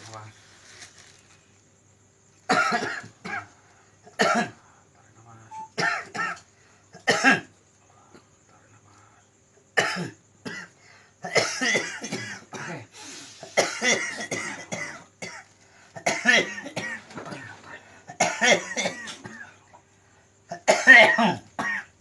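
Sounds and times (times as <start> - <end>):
man coughing hard: 2.5 - 3.5, 4.1 - 4.6, 5.8 - 6.4, 7.0 - 7.5, 9.8 - 12.9, 13.5 - 15.4, 16.0 - 19.6, 20.5 - 21.9.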